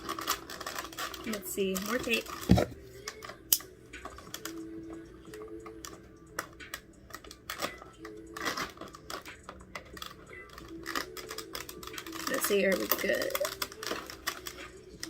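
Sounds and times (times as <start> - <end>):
knife working at packing tape: 0.0 - 3.6, 7.1 - 9.3.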